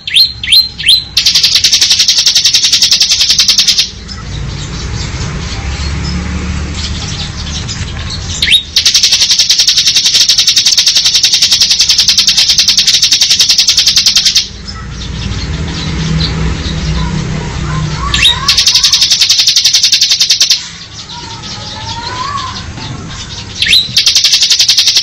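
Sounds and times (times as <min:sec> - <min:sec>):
bird drilling trill: 0:00.0 - 0:04.3, 0:07.0 - 0:14.8, 0:17.9 - 0:25.0.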